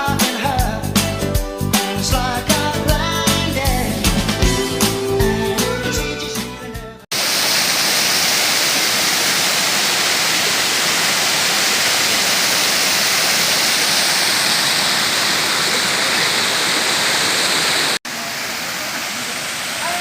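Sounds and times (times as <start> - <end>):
background music: 0.0 - 7.1
waterfall pouring: 7.1 - 20.0.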